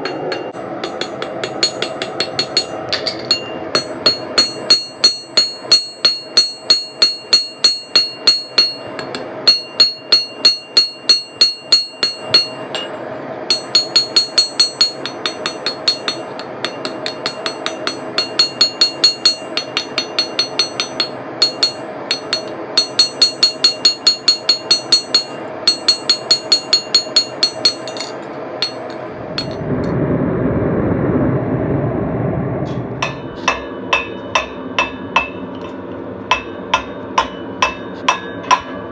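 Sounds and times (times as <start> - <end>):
steady rushing noise: 0.0 - 4.6, 27.9 - 38.6
hammer striking steel on anvil: 0.0 - 29.6, 33.0 - 38.9.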